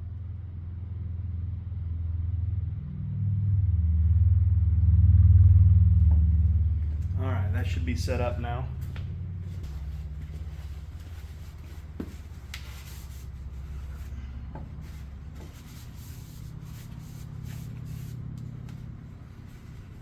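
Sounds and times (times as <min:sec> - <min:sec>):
steady low hum: 0:00.0 - 0:20.0
rubbing and handling noises: 0:06.6 - 0:20.0.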